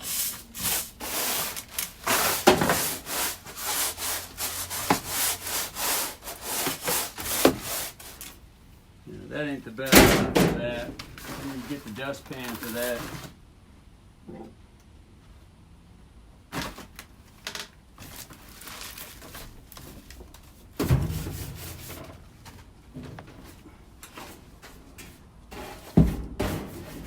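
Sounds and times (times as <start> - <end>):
broom sweeping: 0.0 - 8.4, 11.2 - 13.2, 20.9 - 22.3
heavy thumps: 20.8 - 23.4.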